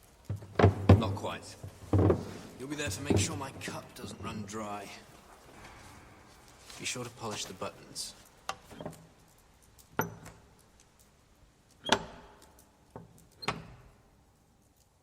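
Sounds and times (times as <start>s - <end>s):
sharp knocks and clunks: 0.2s - 4.4s.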